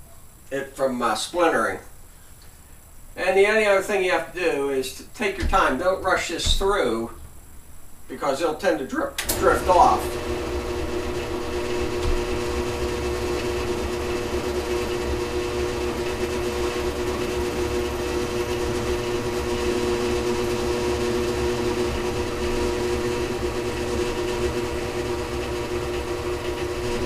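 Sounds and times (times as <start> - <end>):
drill press motor running: 9.2 - 27.0
drill bit boring into wood: 9.4 - 27.0.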